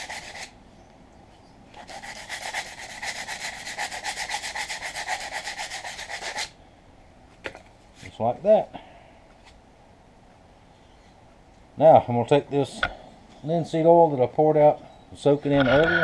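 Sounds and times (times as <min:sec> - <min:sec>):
sandpaper rubbing on wood: 0:00.0 - 0:00.5, 0:01.8 - 0:06.5.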